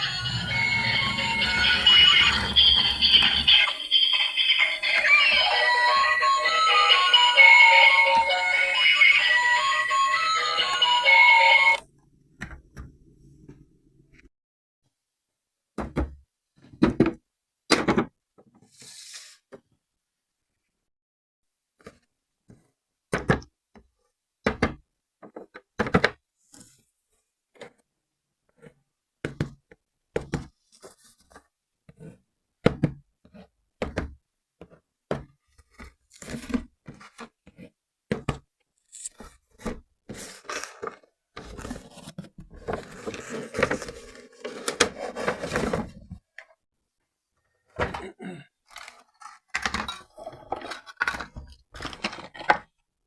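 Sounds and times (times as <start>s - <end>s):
packaging rustling and scraping: 35.5s - 37.3s, 38.8s - 46.3s, 48.7s - 52.6s.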